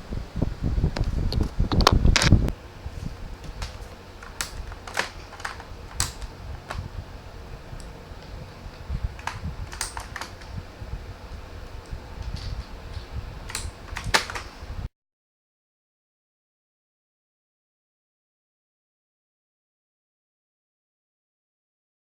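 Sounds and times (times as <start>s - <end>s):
low rumble: 0.0s - 14.9s
mechanical keyboard clicks and clacks: 3.5s - 6.9s, 9.0s - 10.6s, 12.2s - 14.5s.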